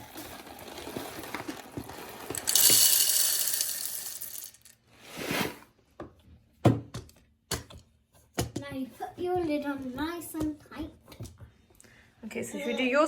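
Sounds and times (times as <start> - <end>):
coffee beans pouring into hopper: 0.0 - 5.5.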